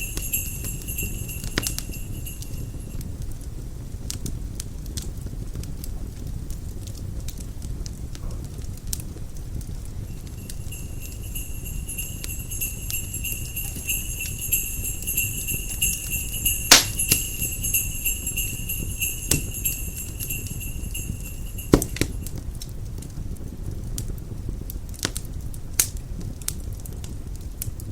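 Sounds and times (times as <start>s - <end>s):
sleigh bells jingling: 0.0s - 3.1s, 10.0s - 22.3s
fireplace fire crackling: 0.0s - 27.9s
fire popping: 9.6s - 22.3s.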